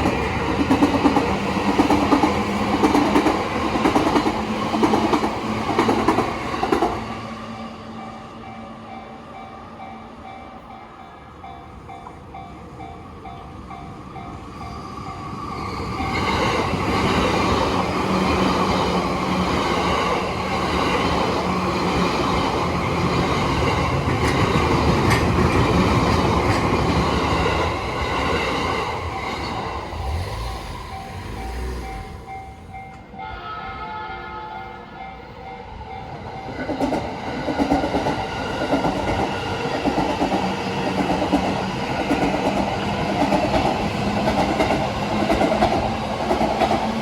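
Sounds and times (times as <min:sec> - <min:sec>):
train passing: 0:00.0 - 0:47.0.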